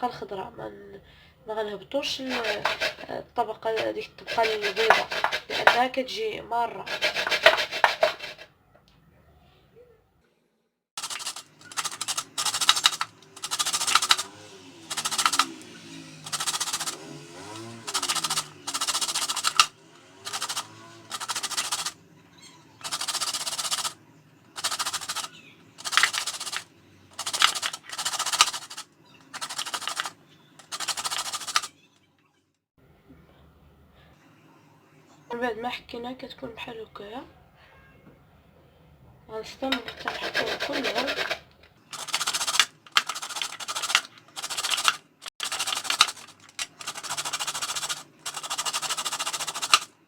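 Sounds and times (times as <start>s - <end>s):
grater scraping lemon peel: 2.1s - 6.0s, 6.8s - 8.5s, 11.0s - 22.0s, 22.8s - 24.0s, 24.6s - 31.7s, 39.7s - 41.4s, 42.0s - 50.0s.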